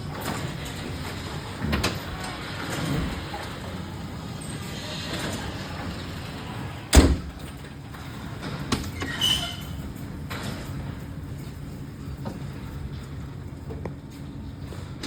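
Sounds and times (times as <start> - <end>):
door shutting thump: 6.9 - 7.4.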